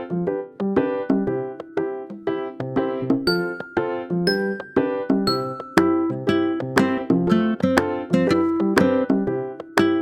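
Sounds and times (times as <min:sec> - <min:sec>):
plucked ukulele music: 0:04.5 - 0:09.2, 0:09.8 - 0:10.0.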